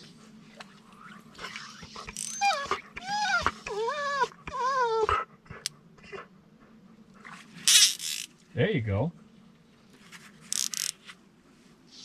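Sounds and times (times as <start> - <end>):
dog whining: 1.4 - 6.2.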